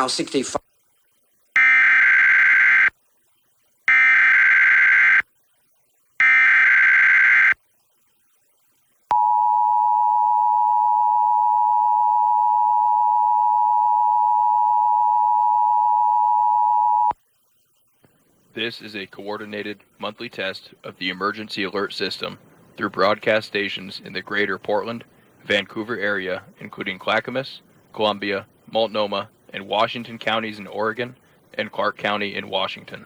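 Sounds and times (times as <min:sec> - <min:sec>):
buzzy digital data tones: 0:00.7 - 0:09.0.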